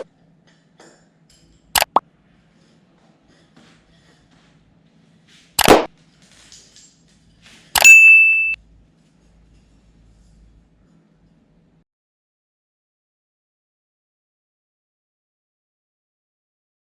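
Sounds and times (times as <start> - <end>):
sharp metallic knocks: 7.8 - 8.6.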